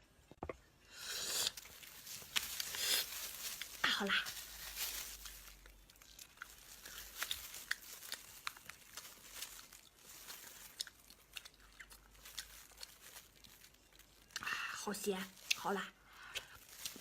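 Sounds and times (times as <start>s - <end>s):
person chewing: 0.9s - 3.8s, 5.2s - 14.6s, 16.2s - 17.0s.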